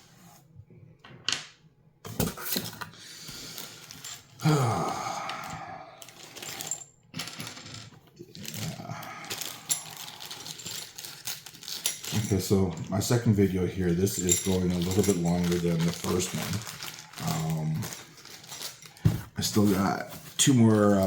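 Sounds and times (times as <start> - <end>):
small stones clinking: 6.0 - 13.0, 13.9 - 19.0
packaging rustling: 8.3 - 21.0.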